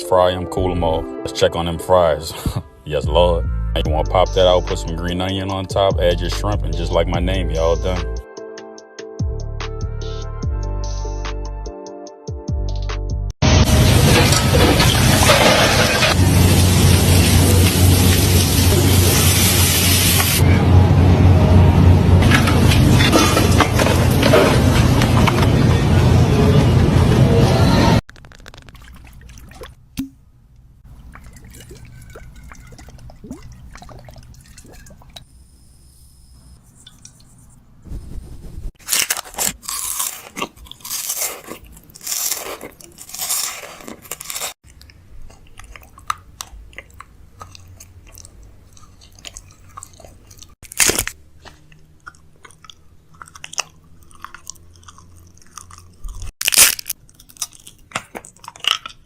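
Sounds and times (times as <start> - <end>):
person chewing crunchy food: 38.8 - 59.0.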